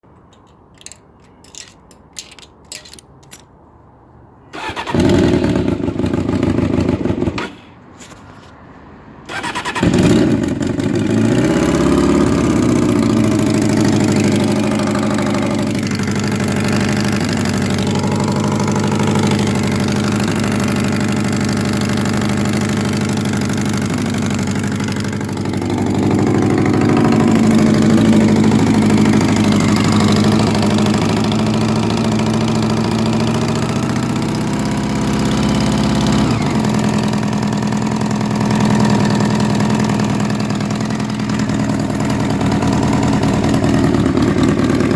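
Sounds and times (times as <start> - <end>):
motorcycle starter cranking: 0.1 - 3.5, 4.5 - 7.6, 9.3 - 44.9
small clicks: 0.1 - 3.5
motorcycle engine idling: 4.6 - 7.4, 9.4 - 44.9
exhaust ticking: 9.4 - 44.9.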